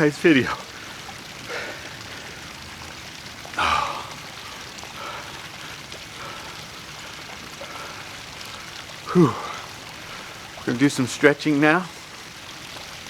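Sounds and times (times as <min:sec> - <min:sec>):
background hiss: 0:00.0 - 0:13.0
man exhaling heavily: 0:03.6 - 0:05.4, 0:09.1 - 0:09.7.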